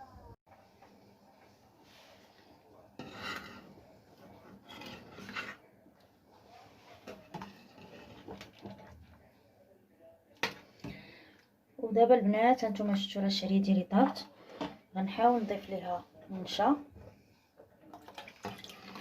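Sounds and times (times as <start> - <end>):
utensil scraping in a pot: 1.8 - 5.7, 6.4 - 8.9.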